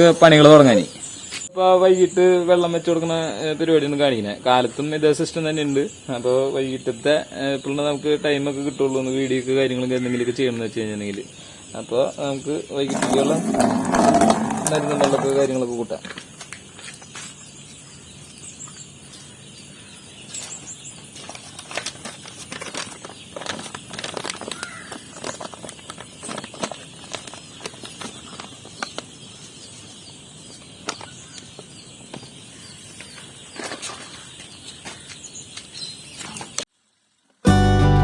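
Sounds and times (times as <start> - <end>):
small knocks and clatters: 12.9 - 17.4, 20.3 - 29.1
chicks rustling and fluttering: 20.3 - 35.1.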